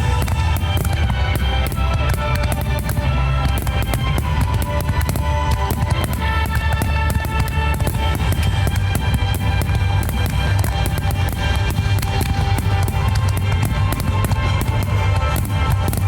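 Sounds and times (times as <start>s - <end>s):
loud rock music: 0.0s - 16.0s.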